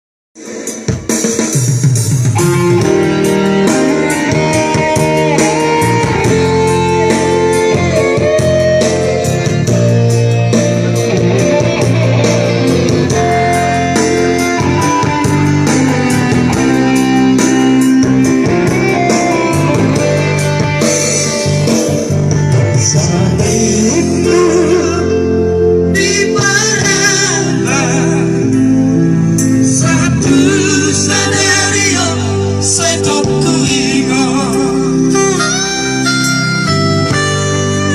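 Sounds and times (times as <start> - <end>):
drum kit steady beat: 0.4 - 24.8
plucked guitar: 2.3 - 37.9.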